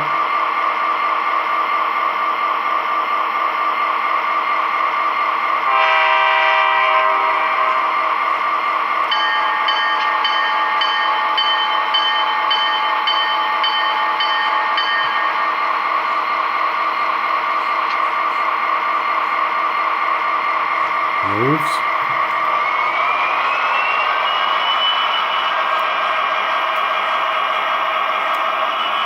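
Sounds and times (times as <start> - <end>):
locomotive horn blast: 5.7 - 7.9
locomotive bell ringing: 9.1 - 15.5.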